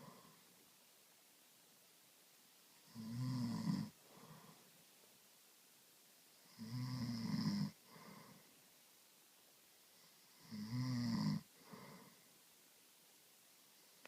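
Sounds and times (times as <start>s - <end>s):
soft breath: 0.0s - 0.7s, 3.8s - 5.0s, 7.7s - 8.7s, 11.4s - 12.6s
person snoring loudly: 2.9s - 4.0s, 6.5s - 7.8s, 10.4s - 12.1s.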